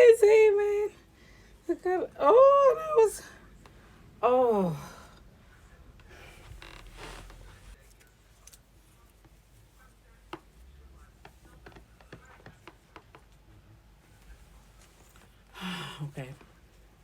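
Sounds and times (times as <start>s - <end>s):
soft rustle of hair handling: 5.2s - 17.0s.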